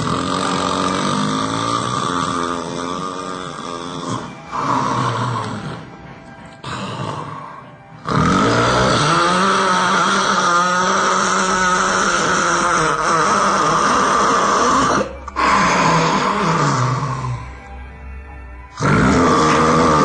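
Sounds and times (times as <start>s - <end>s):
loud human snore: 0.0s - 6.0s, 6.6s - 17.6s, 18.7s - 20.0s.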